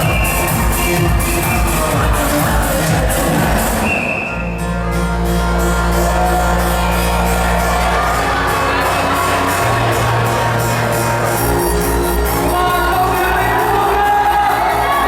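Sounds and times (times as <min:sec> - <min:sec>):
electronic dance music: 0:00.0 - 0:15.0
crowd shouting: 0:05.2 - 0:15.0.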